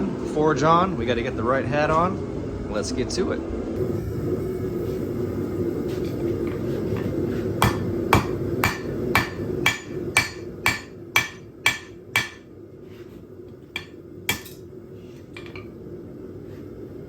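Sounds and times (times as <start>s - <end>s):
hammer striking steel on anvil: 6.0s - 12.5s, 13.7s - 14.7s.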